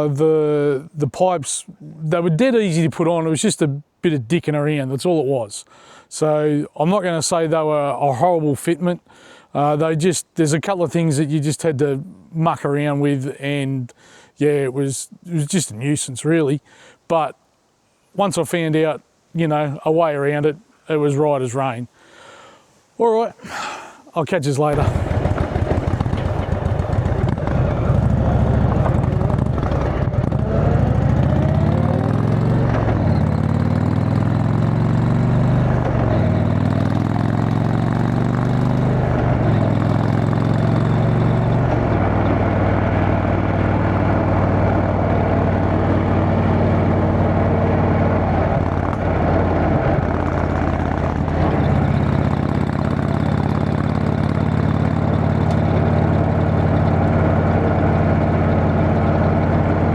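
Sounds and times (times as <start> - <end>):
motorcycle accelerating through gears: 24.7 - 59.9.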